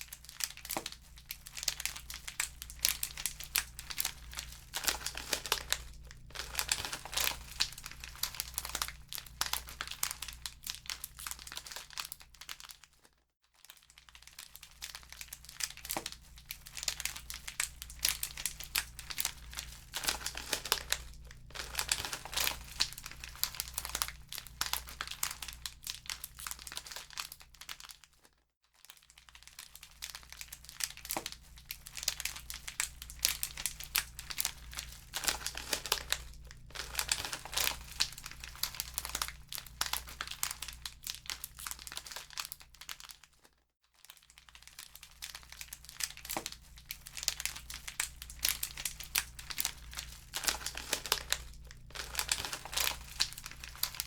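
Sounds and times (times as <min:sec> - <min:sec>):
low steady hum: 0:00.0 - 0:12.0, 0:14.9 - 0:27.2, 0:30.1 - 0:42.3, 0:45.2 - 0:54.0
wood fire crackling: 0:00.2 - 0:10.3, 0:16.8 - 0:25.2, 0:32.4 - 0:40.4, 0:45.8 - 0:54.0.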